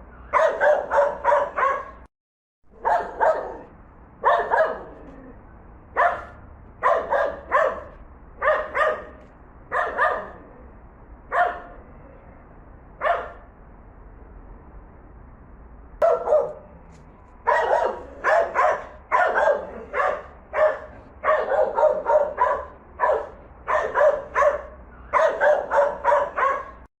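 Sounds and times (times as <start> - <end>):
dog barking: 0.2 - 2.1, 2.7 - 5.2, 6.0 - 10.4, 11.3 - 11.8, 13.0 - 13.4, 16.0 - 16.8, 17.4 - 26.9.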